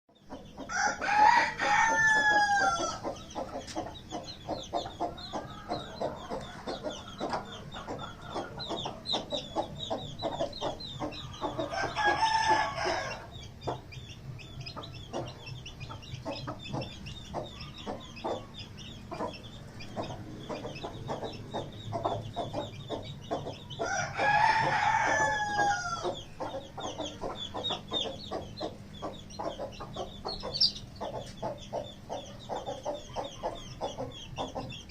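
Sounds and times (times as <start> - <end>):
chicks peeping: 0.1 - 34.9
hens clucking: 0.2 - 34.9
rooster crowing: 0.7 - 3.0, 11.7 - 13.3, 23.8 - 26.2.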